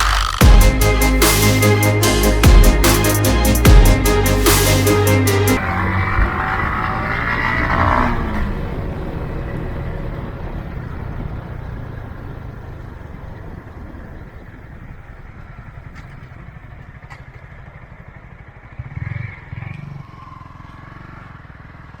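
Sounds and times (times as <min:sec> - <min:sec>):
motorcycle engine running: 0:05.6 - 0:22.0.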